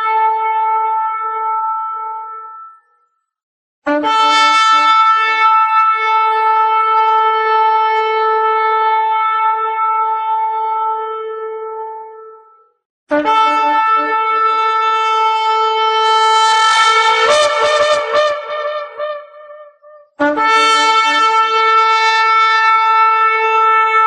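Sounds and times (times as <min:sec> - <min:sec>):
horn blasts: 0:03.9 - 0:11.7, 0:13.1 - 0:24.0.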